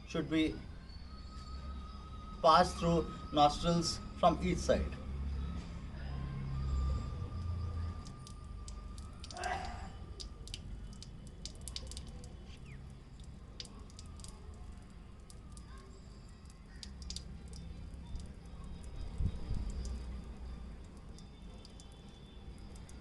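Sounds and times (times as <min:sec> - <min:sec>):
water dripping: 0:06.5 - 0:23.0.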